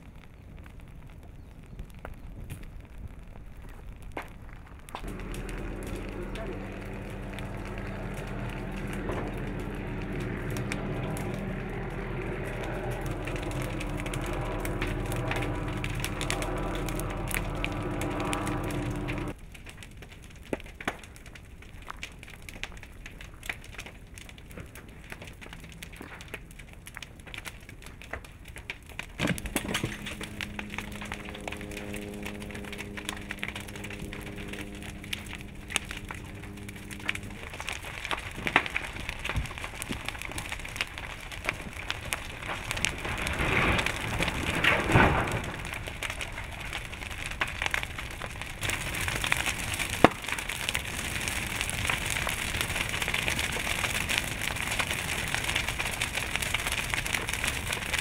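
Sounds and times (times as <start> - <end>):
wooden house burning crackling: 0.0 - 58.0
wood cracking and crunching: 2.0 - 58.0
steady low hum: 5.0 - 19.4, 29.2 - 39.4.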